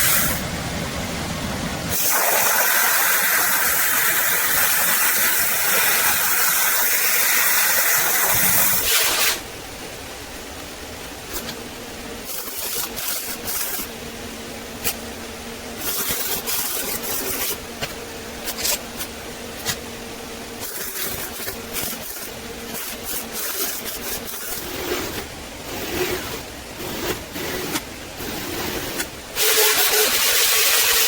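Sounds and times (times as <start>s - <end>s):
short hissing bursts and clicks: 0.0s - 0.4s, 1.9s - 9.4s, 12.2s - 13.9s, 15.8s - 19.9s, 20.6s - 31.0s
loud steady hiss: 0.0s - 31.0s
steady hum: 0.0s - 31.0s.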